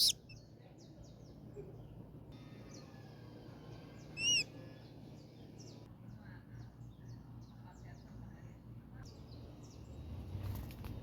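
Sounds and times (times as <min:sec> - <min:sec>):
bird calling arched note: 0:00.0 - 0:00.2
faint bird chirps: 0:00.0 - 0:08.2.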